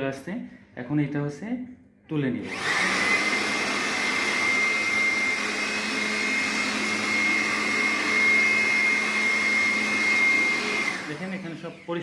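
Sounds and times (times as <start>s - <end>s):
electric air blower vacuuming: 2.4s - 12.0s.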